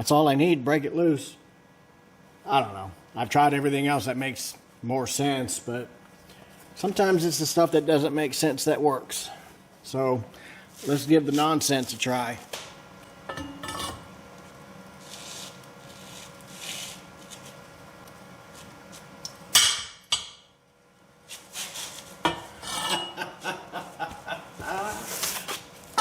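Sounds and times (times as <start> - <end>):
metal tools clinking and scraping: 13.3 - 14.1, 22.3 - 23.2.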